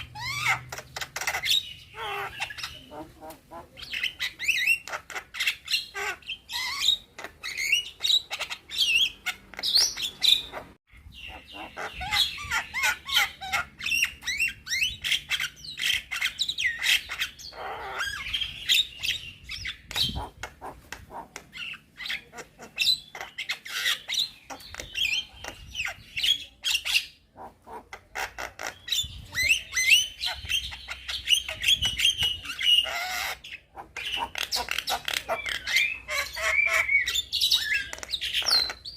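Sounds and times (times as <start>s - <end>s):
myna bird singing: 0.0s - 38.9s.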